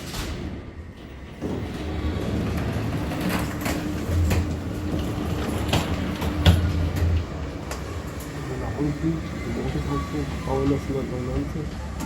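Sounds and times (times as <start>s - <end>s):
elevator humming with low rumble: 0.0s - 12.0s.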